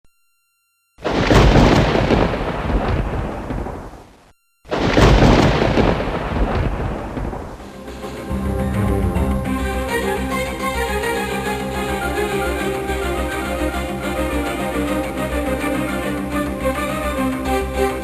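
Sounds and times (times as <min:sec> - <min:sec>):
thunder claps rumbling: 0:01.0 - 0:04.1, 0:04.7 - 0:09.9.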